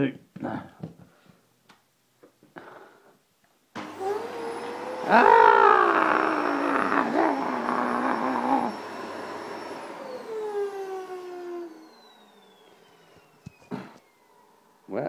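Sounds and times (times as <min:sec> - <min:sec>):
robot vacuum motor running: 0:03.8 - 0:14.8
motor whine spinning down: 0:03.8 - 0:15.0.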